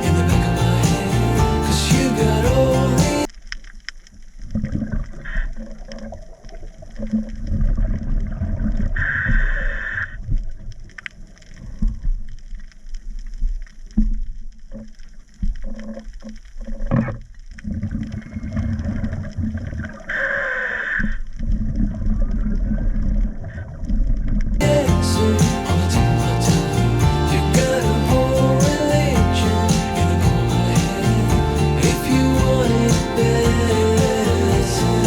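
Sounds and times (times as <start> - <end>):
underwater bubbling and gurgling: 3.4 - 24.6.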